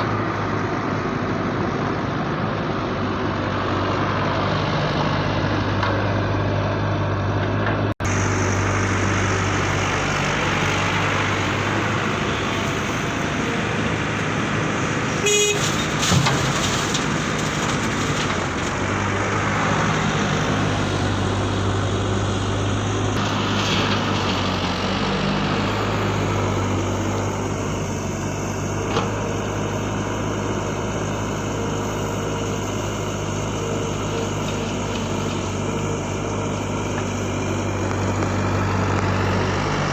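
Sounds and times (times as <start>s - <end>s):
horn-like tone: 15.2s - 15.8s.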